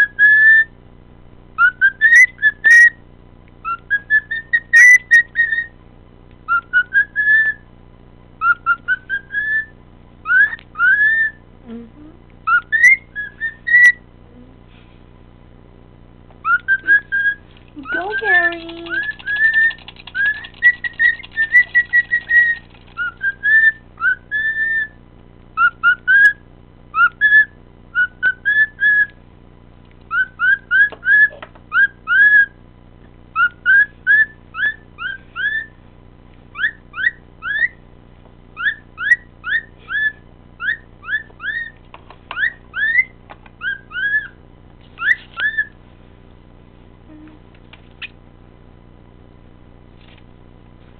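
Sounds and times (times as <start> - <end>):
cockatiel whistling: 0.0 - 0.7, 1.6 - 3.0, 3.6 - 5.7, 6.5 - 7.6, 8.4 - 11.4, 12.4 - 14.0, 16.4 - 18.1, 18.9 - 25.0, 25.6 - 29.2, 30.1 - 32.6, 33.4 - 35.7, 36.5 - 37.8, 38.6 - 41.8, 42.4 - 44.4, 45.0 - 45.8.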